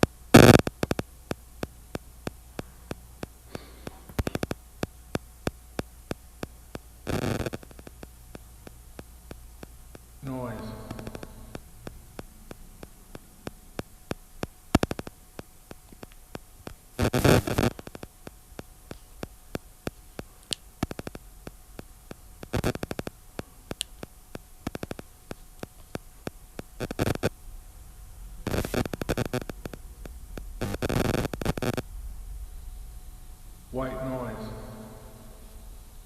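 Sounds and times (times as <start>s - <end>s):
bursts of rough noise: 0.0s - 23.2s
crackling static clicks: 0.0s - 36.0s.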